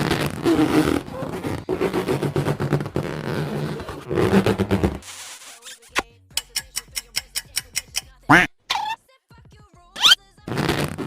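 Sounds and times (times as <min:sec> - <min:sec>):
scraping rubbing sound: 0:00.0 - 0:06.0
sharp rapid clicks: 0:06.4 - 0:08.2.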